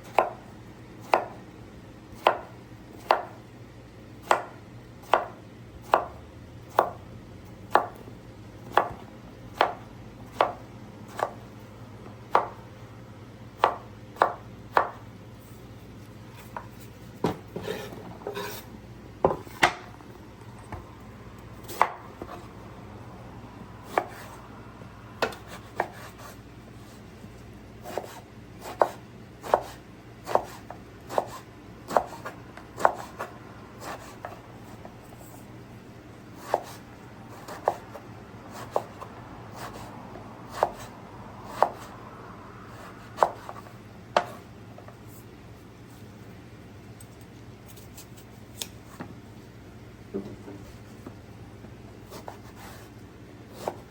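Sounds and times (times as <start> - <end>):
knife chopping on cutting board: 0.0 - 0.4, 1.0 - 1.4, 2.2 - 3.4, 4.2 - 7.0, 7.7 - 8.0, 8.6 - 11.5, 12.3 - 12.6, 13.6 - 15.0, 16.4 - 19.9, 21.6 - 22.5, 23.8 - 24.4, 25.2 - 27.0, 27.8 - 34.9, 36.4 - 39.9, 40.5 - 40.9, 41.5 - 41.9, 42.8 - 45.0, 52.0 - 53.9
knife scraping: 16.3 - 19.6, 25.2 - 27.1, 52.1 - 53.9.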